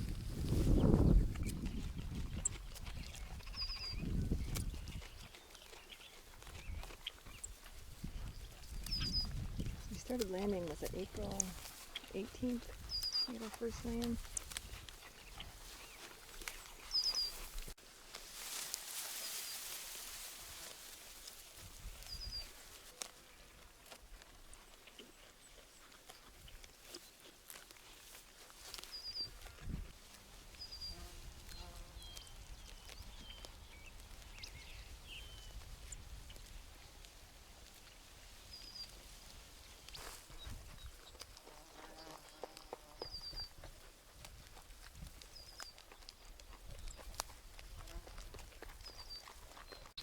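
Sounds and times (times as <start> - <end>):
low rumble of wind: 0.0 - 16.8, 29.3 - 41.2, 43.5 - 45.4
small bird chirping: 0.6 - 14.4, 15.1 - 17.6, 22.1 - 22.5, 28.9 - 29.4, 30.6 - 35.6, 37.9 - 39.0, 42.0 - 43.6, 45.3 - 47.1, 48.7 - 50.0.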